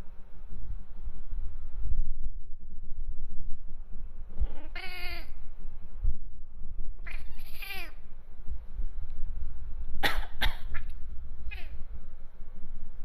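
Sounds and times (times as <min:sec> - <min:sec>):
cat meowing: 0:04.4 - 0:05.4, 0:07.0 - 0:08.0, 0:11.5 - 0:11.8
person coughing: 0:10.0 - 0:10.8.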